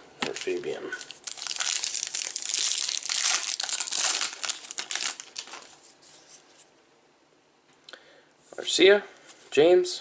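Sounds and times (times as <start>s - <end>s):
plastic wrapper crinkling: 0.2s - 6.4s.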